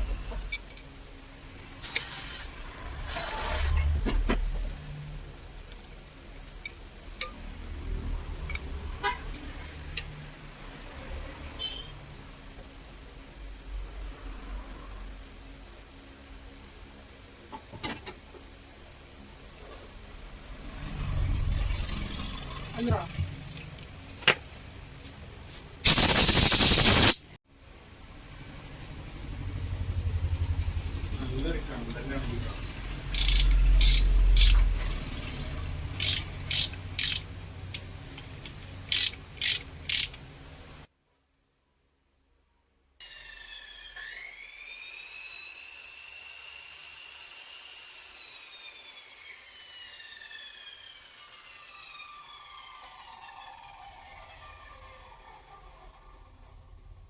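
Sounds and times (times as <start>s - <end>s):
pressure washer spray hiss: 25.8s - 27.3s.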